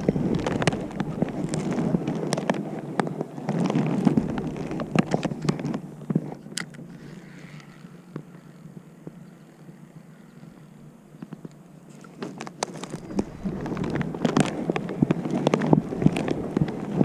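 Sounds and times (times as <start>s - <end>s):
branches rustling and snapping: 0.0s - 8.3s, 11.9s - 17.0s.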